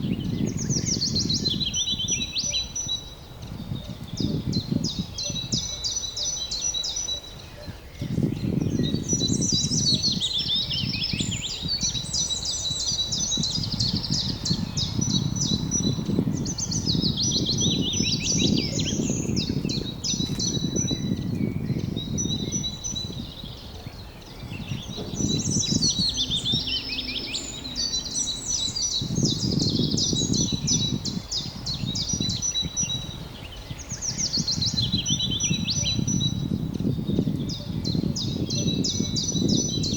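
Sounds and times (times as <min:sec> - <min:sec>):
songbirds singing and chirping: 0:00.0 - 0:39.9
low rumbling noise: 0:12.8 - 0:32.4.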